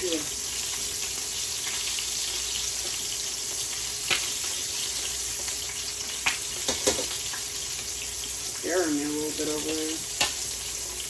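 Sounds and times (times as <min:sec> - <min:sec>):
chicken deep-frying in oil: 0:00.0 - 0:11.0.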